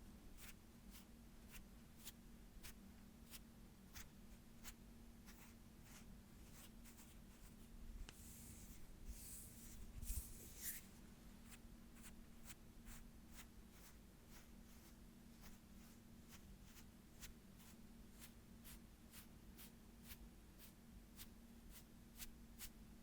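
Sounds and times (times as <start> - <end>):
faint steady hum: 0.0 - 23.0
hand brushing strokes: 5.3 - 11.0
rustling rub: 8.2 - 11.0.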